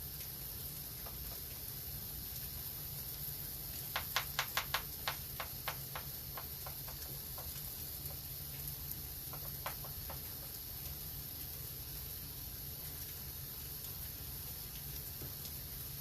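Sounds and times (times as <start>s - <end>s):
steady hiss: 0.0s - 16.0s
sharp clicks: 4.0s - 7.1s.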